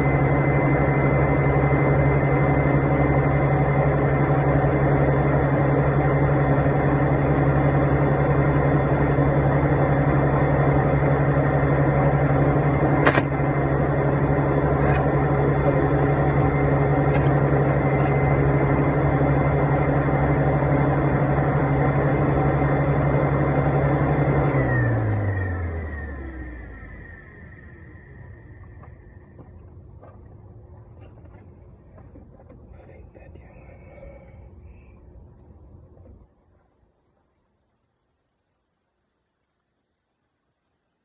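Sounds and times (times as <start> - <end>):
motor humming: 0.0 - 35.4.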